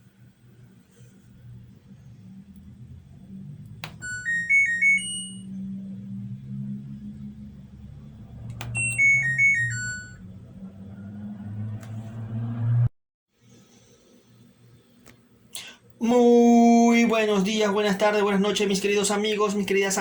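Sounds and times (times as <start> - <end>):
washing machine beeping tunes: 3.8 - 5.6, 8.6 - 10.2.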